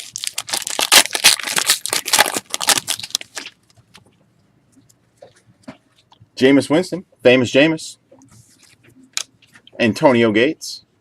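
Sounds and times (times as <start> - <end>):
foil wrapper tearing and crinkling: 0.0 - 3.6.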